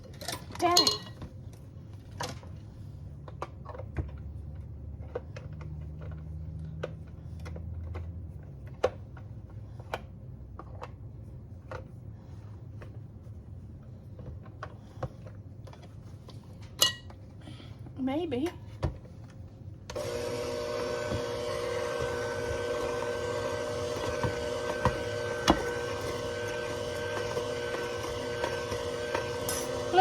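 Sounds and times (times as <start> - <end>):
mixer beaters clicking: 19.9 - 30.0.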